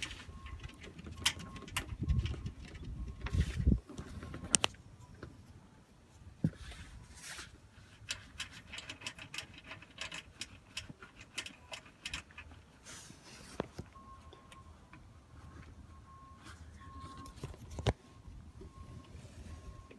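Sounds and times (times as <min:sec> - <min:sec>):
hand tools clicking on metal parts: 0:00.0 - 0:03.3, 0:08.0 - 0:12.8.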